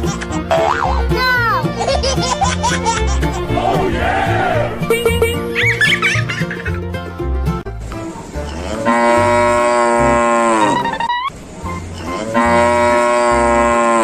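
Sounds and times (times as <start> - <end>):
cow mooing: 8.6 - 10.8, 12.1 - 14.0.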